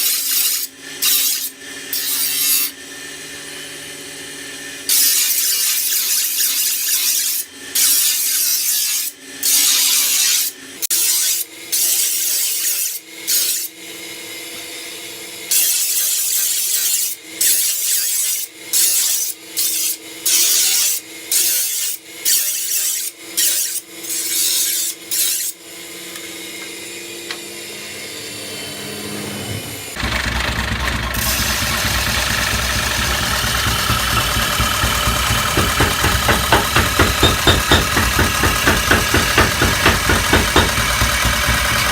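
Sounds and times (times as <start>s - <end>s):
sickle blade being sharpened: 0.0s - 2.7s, 15.5s - 25.6s
loud rhythmic machine running: 30.0s - 41.9s.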